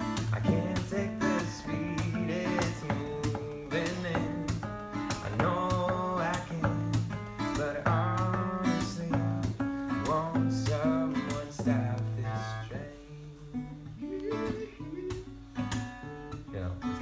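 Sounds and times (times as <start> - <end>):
acoustic guitar playing: 0.0 - 17.0.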